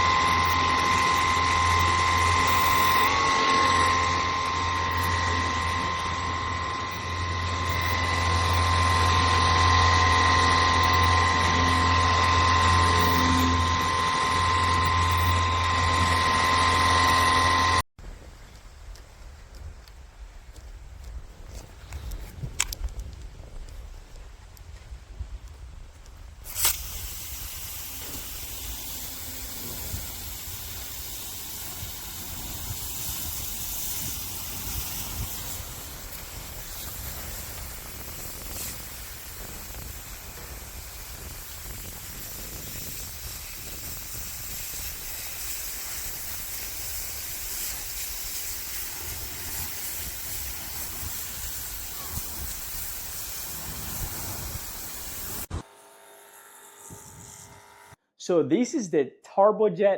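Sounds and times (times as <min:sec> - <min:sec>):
pressure washer spraying water: 0:00.0 - 0:17.8, 0:26.4 - 0:55.6.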